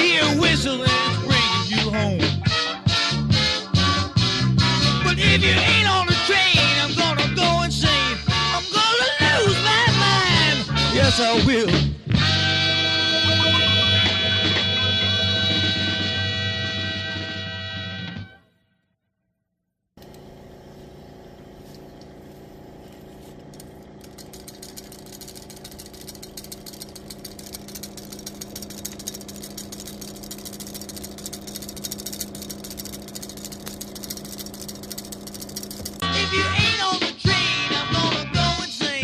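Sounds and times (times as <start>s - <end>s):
rattling clatter: 23.5s - 36.0s.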